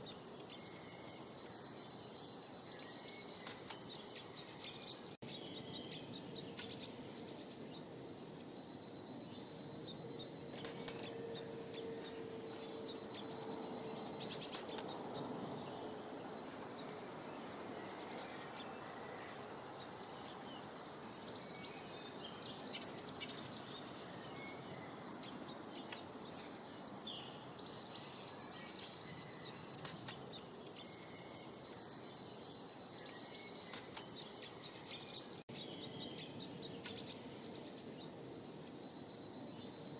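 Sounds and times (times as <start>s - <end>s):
small birds chirping: 0.0s - 39.9s
steady background hiss: 0.0s - 39.9s.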